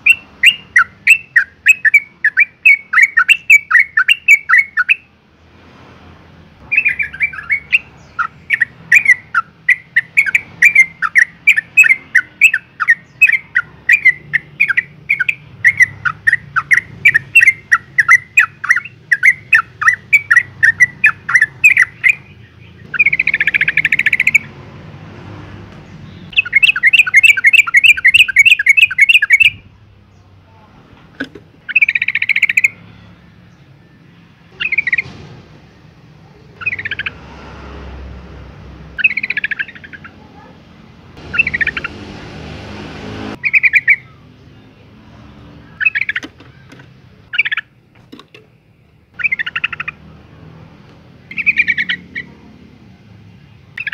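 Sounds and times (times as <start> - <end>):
bird chattering calls: 0.0 - 5.1, 6.7 - 24.5, 26.1 - 29.6, 31.1 - 32.8, 34.6 - 35.1, 36.4 - 37.2, 39.0 - 40.6, 41.2 - 42.2, 43.3 - 44.2, 45.7 - 47.7, 49.2 - 50.1, 51.3 - 52.4
buzzy bird trill: 0.0 - 5.1, 6.7 - 24.5, 26.0 - 29.7, 31.6 - 33.7, 34.4 - 35.1, 36.4 - 37.2, 38.9 - 40.5, 41.2 - 44.5, 45.4 - 47.8, 49.2 - 50.1, 51.3 - 52.5.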